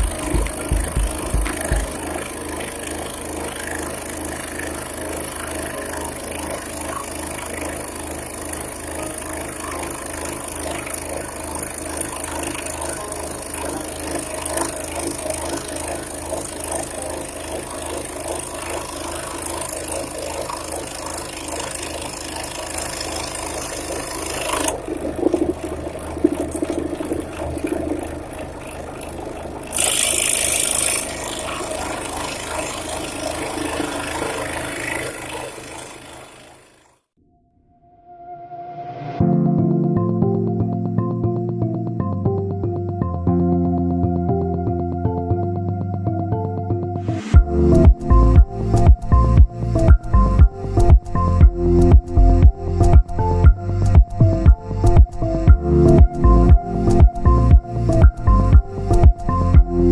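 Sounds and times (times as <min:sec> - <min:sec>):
scroll saw cutting wood: 0:00.0 - 0:37.0.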